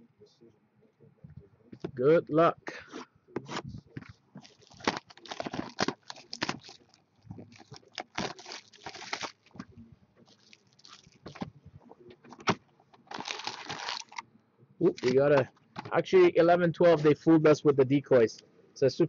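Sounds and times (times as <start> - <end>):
plastic wrapping torn and crinkled: 4.4 - 9.6, 10.3 - 11.4, 13.0 - 14.2.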